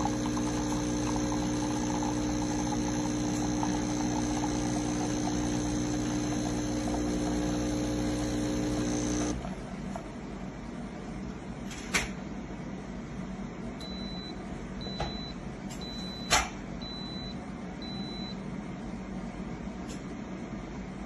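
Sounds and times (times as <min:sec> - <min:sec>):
espresso machine hum: 0:00.0 - 0:09.9.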